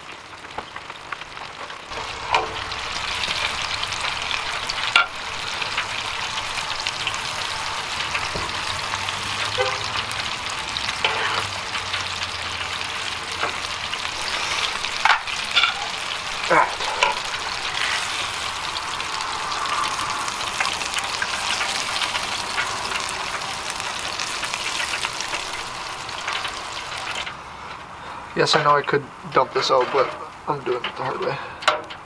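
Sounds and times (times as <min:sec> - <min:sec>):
fish sizzling in fryer oil: 0:00.0 - 0:32.0.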